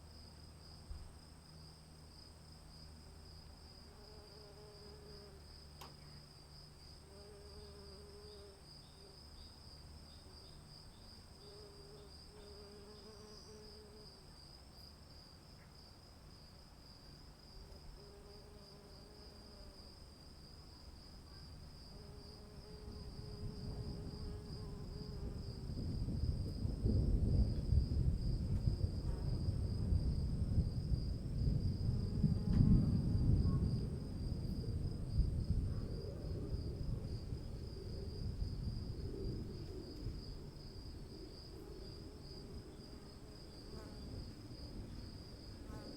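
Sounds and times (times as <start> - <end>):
crickets trilling: 0.0 - 45.9
thunder rumbling: 25.3 - 39.7.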